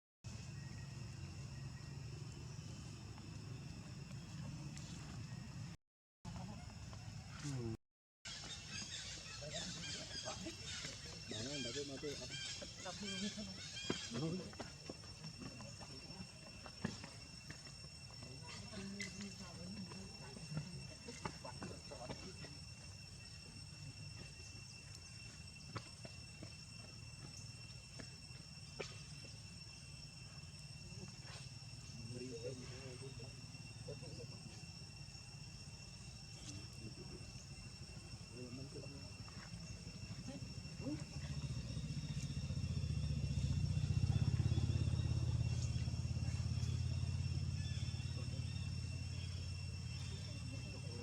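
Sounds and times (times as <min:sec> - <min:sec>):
crickets chirring: 0:00.2 - 0:51.0
high insect trilling: 0:07.5 - 0:51.0
vehicle engine passing by: 0:41.1 - 0:50.2.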